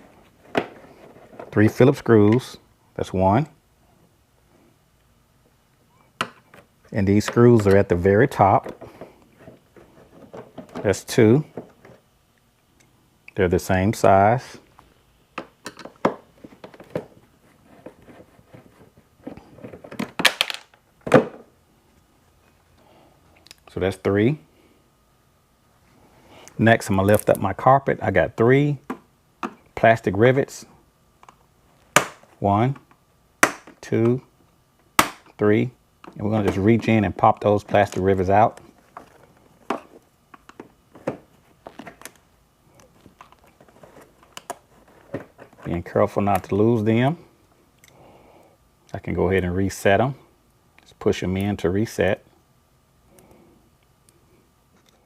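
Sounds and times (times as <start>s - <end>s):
plastic rivets popping out: 19.9s - 21.3s.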